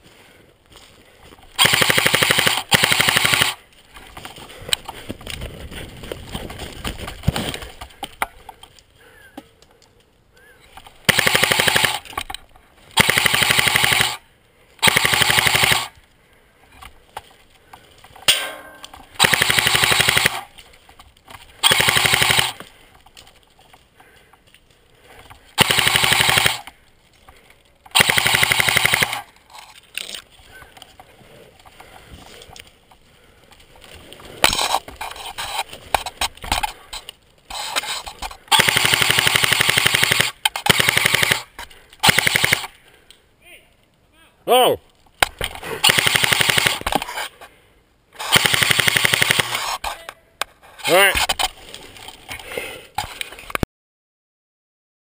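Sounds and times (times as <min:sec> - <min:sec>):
airsoft gun rapid bursts: 0:01.6 - 0:03.6, 0:11.1 - 0:12.0, 0:13.0 - 0:14.2, 0:14.8 - 0:15.9, 0:19.2 - 0:20.5, 0:21.6 - 0:22.6, 0:25.6 - 0:26.7, 0:27.9 - 0:29.3, 0:38.5 - 0:42.7, 0:45.8 - 0:46.8, 0:48.2 - 0:49.8.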